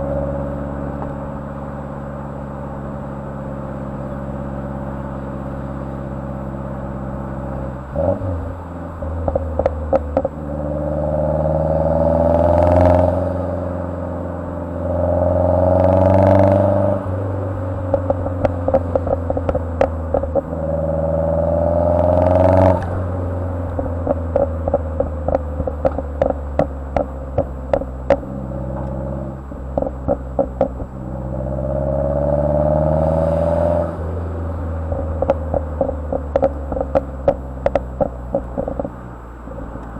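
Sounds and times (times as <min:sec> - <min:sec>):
exhaust pops and crackles: 0:00.0 - 0:01.4, 0:09.0 - 0:10.5, 0:15.8 - 0:21.3, 0:21.9 - 0:31.4, 0:33.9 - 0:39.9
car engine revving: 0:00.0 - 0:39.9.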